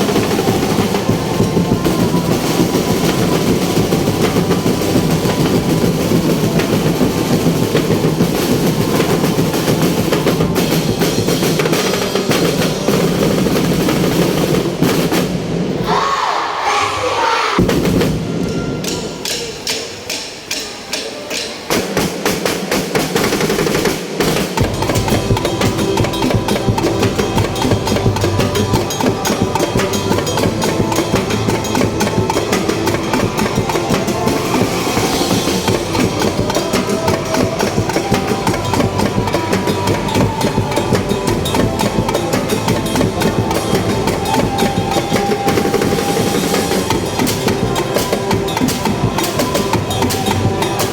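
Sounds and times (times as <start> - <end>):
snare drums rapid strikes: 0.0 - 16.1, 17.6 - 50.9
low drums: 0.0 - 21.0, 21.6 - 50.9.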